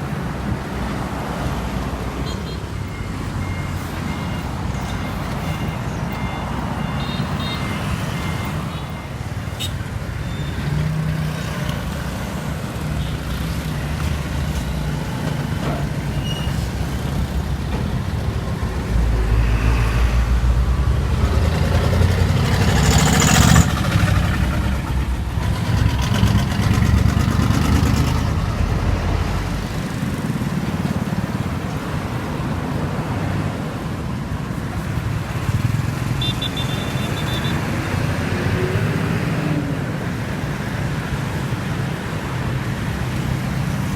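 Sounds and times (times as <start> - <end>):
truck engine rumbling: 0.0 - 43.9
high beep: 2.3 - 10.8.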